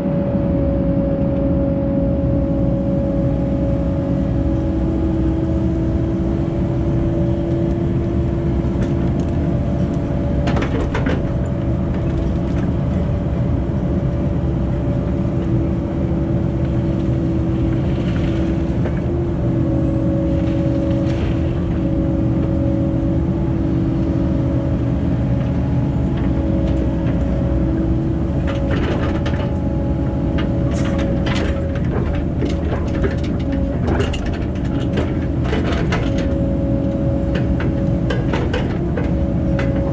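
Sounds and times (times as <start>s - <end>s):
diesel engine running: 0.0s - 39.9s
metal clanks and knocks: 30.4s - 36.4s.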